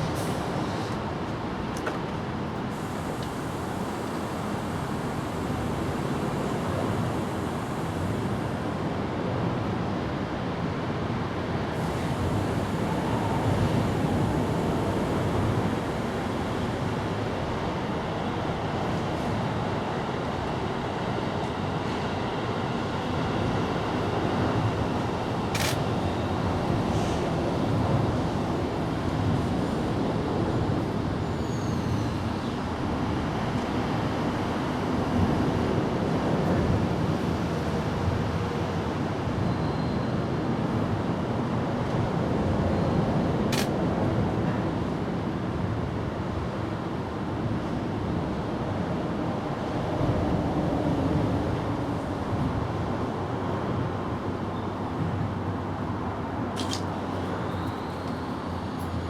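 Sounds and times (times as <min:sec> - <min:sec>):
sharp clicks: 0:25.6 - 0:25.9, 0:56.6 - 0:58.2.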